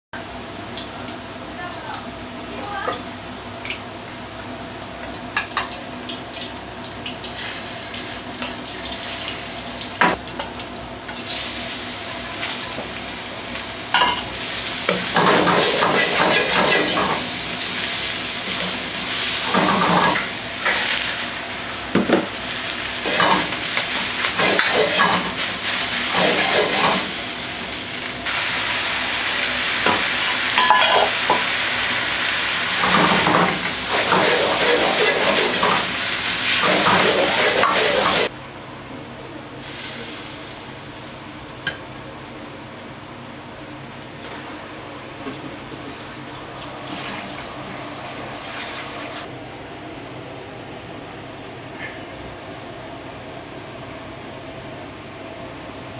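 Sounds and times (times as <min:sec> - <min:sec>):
food sizzling in pan: 0:05.2 - 0:38.4, 0:39.6 - 0:44.3, 0:46.5 - 0:49.3
utensil scraping pan: 0:36.6 - 0:38.3.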